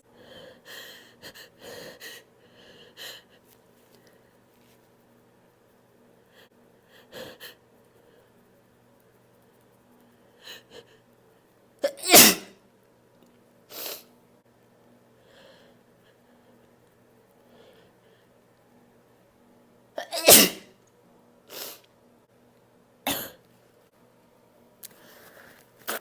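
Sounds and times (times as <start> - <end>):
person sneezing: 11.8 - 12.5, 20.0 - 20.7.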